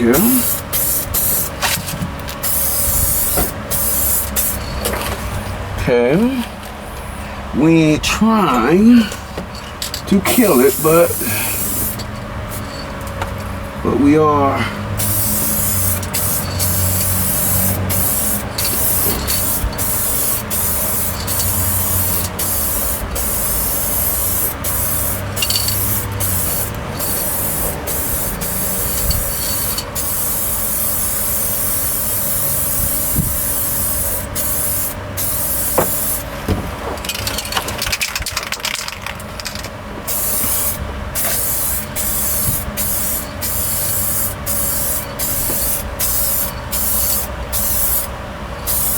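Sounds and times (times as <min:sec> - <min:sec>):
steady low hum: 0:00.0 - 0:48.9
paint spraying hiss: 0:00.2 - 0:01.6, 0:02.4 - 0:04.7, 0:10.3 - 0:12.8, 0:15.0 - 0:36.3, 0:40.1 - 0:48.9.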